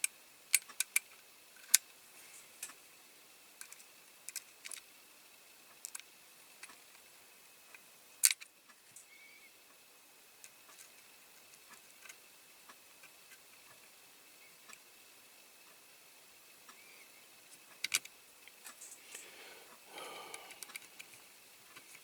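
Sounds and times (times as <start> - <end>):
metal parts clicking on toy model: 0.5 - 1.8, 3.6 - 4.8, 5.8 - 6.0, 8.2 - 8.5.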